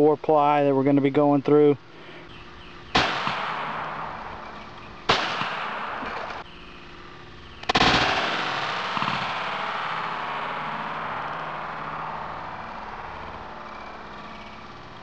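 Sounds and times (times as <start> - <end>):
pistol shots with ringing decay: 2.8 - 6.6, 7.6 - 14.9.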